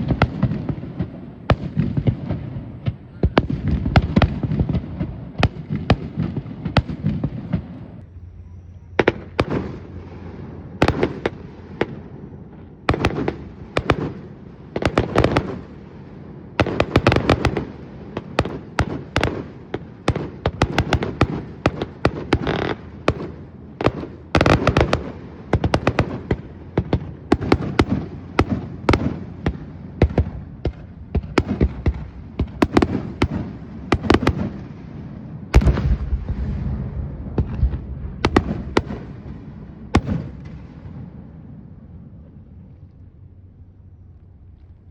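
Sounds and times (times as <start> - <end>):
firework shells bursting: 35.5 - 40.7.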